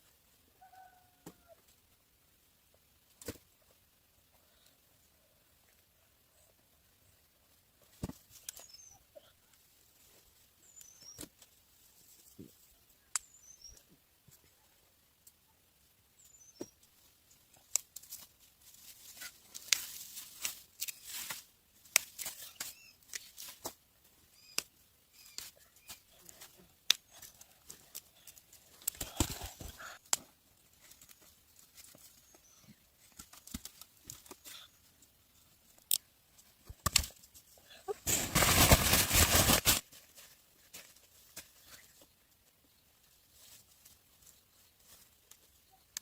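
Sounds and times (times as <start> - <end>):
faint high chirps: 13.2 - 13.9
corn plants rustling and crackling: 16.2 - 46.0.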